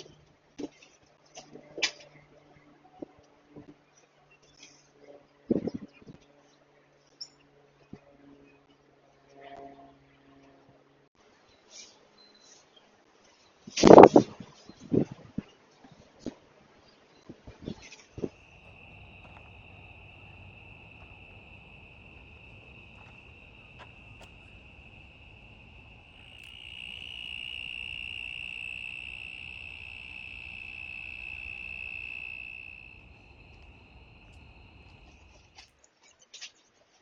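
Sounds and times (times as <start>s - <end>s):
faint low rumble: 18.2s - 35.6s
insects buzzing: 18.2s - 35.7s.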